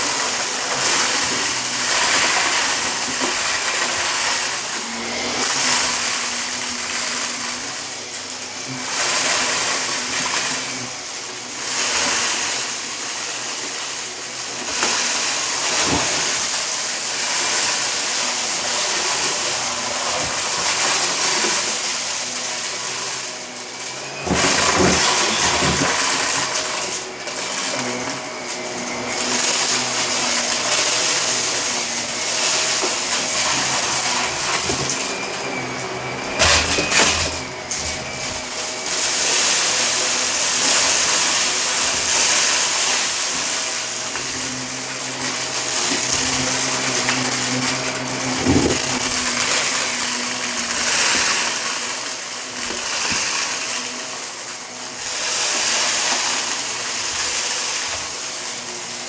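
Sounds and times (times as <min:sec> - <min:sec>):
vacuum cleaner running: 0:00.0 - 0:59.0
grit clicking and rattling: 0:36.4 - 0:59.0.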